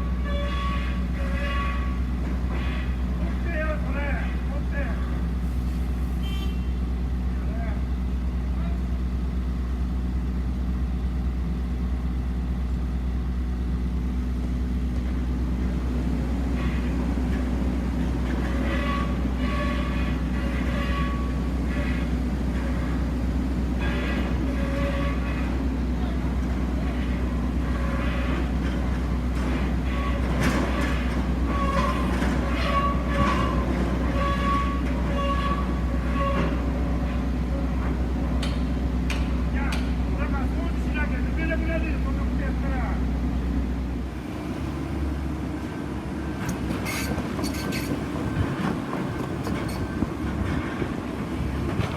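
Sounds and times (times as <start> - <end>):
drilling rig droning: 14.9 - 43.0.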